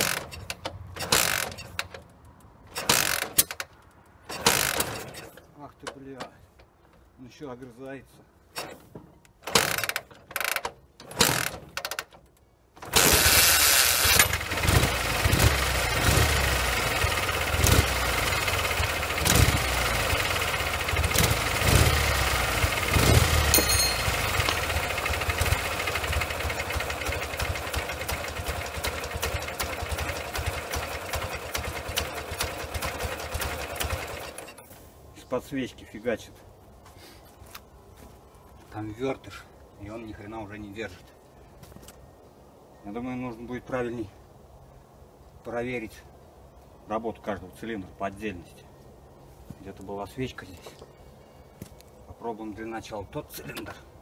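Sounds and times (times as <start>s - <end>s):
motorcycle engine running unevenly: 14.3s - 34.4s.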